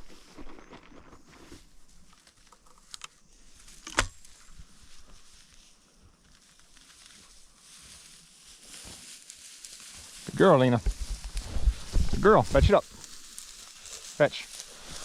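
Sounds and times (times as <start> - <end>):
footsteps through dry grass: 3.2 - 15.0.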